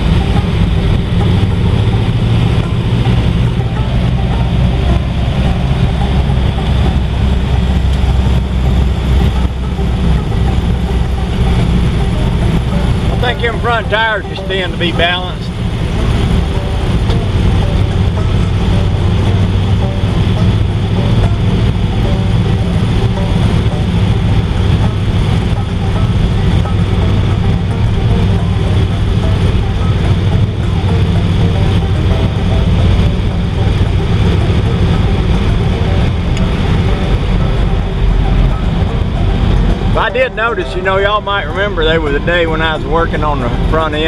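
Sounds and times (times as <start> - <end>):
car engine and exhaust drone: 0.0 - 44.0
tire and road noise: 0.0 - 44.0.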